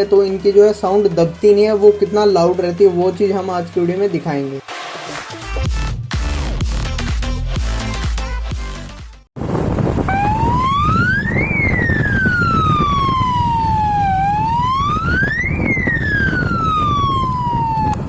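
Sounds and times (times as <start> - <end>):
background music: 0.0 - 9.2
wind noise from riding: 9.4 - 18.0
police siren wailing: 10.1 - 18.0.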